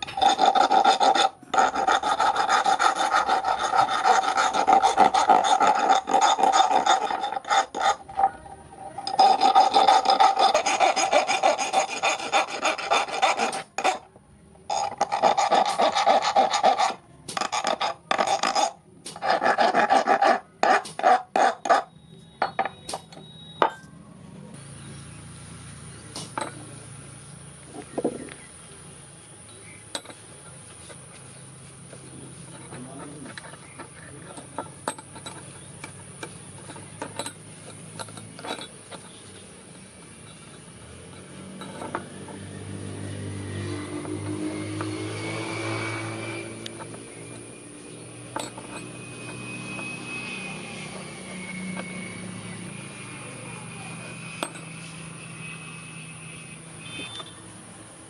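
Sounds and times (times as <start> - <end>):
file rasping on steel: 0.0 - 14.1, 14.7 - 21.9, 32.3 - 39.2, 40.3 - 55.1.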